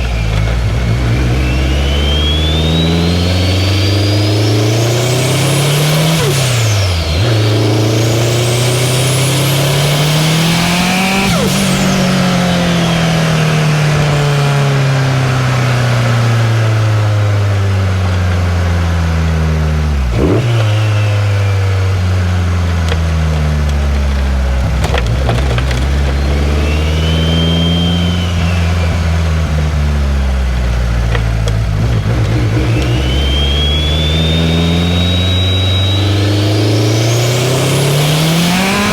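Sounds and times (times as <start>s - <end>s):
turbo whistle: 0.0s - 15.6s, 25.9s - 29.8s, 32.0s - 38.9s
car engine revving: 0.0s - 38.9s.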